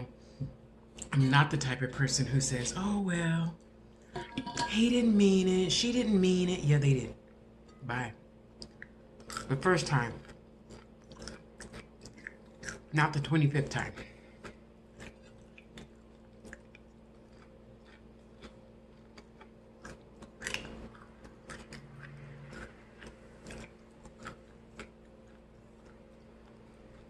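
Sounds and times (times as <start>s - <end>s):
food crunch: 8.6s - 12.9s, 13.8s - 27.0s
mouth chewing food: 8.6s - 12.9s, 13.6s - 27.0s.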